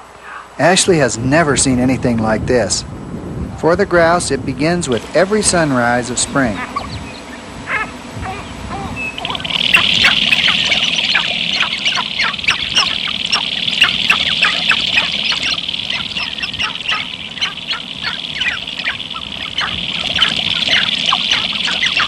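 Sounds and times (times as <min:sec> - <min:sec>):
grouse squawking clucks: 0:04.9 - 0:22.0
high-pitched bird chorus: 0:04.9 - 0:22.0.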